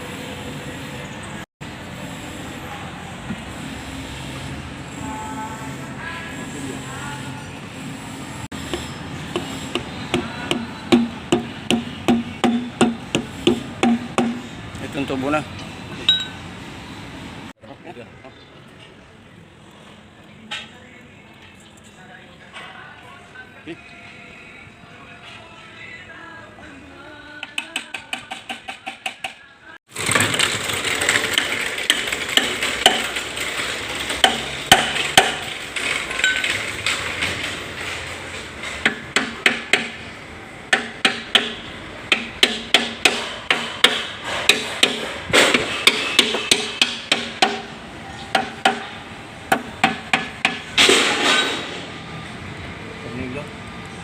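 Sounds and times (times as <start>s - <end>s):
noisy background: 0.0s - 54.0s
hammer striking metal: 8.5s - 14.5s, 34.2s - 35.5s, 38.6s - 40.0s, 40.7s - 51.8s.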